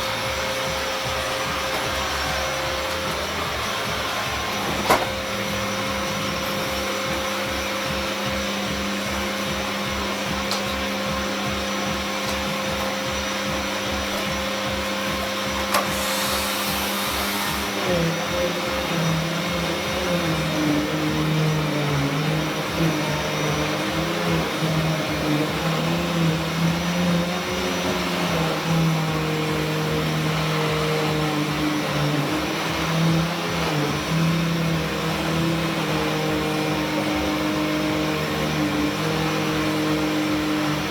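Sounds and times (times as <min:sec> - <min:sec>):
vacuum cleaner running: 0:00.0 - 0:40.9.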